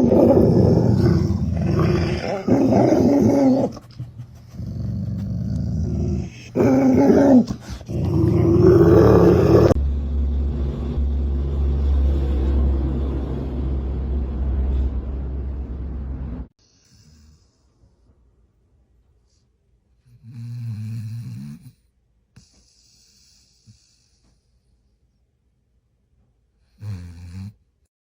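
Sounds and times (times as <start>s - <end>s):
dog growling: 0.0s - 9.8s
low rumble: 7.7s - 16.5s.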